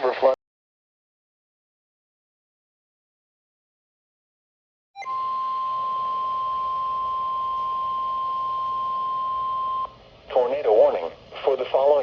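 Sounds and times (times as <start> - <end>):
emergency alert tone: 5.0 - 10.0.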